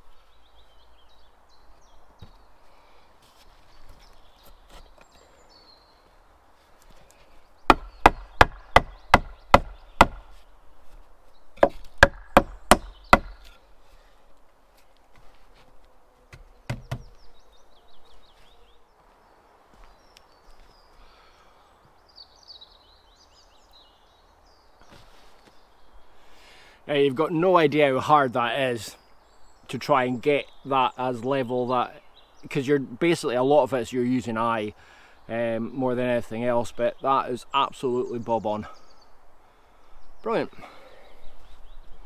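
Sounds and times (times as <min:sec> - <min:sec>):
faint birds chirping: 0:00.0 - 0:42.0
tool striking wood: 0:07.7 - 0:10.4, 0:11.6 - 0:13.5, 0:16.3 - 0:17.2.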